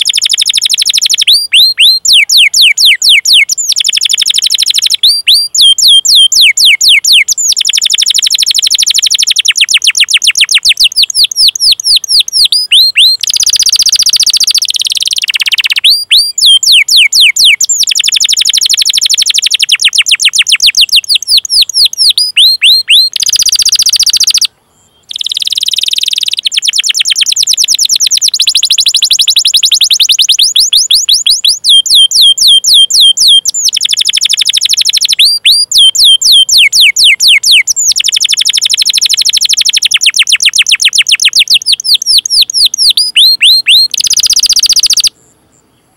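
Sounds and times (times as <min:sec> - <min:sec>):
canary singing: 0:00.0 - 0:45.9.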